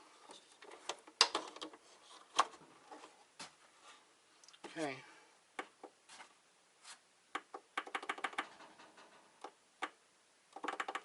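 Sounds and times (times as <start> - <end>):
hands clicking and tapping: 10.6 - 11.0.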